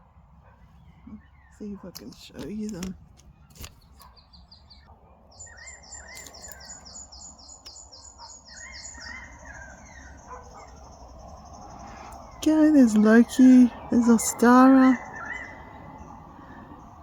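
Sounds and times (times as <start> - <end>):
bird warbling calls: 1.0 - 17.0
high repeated bird chirps: 4.0 - 16.2.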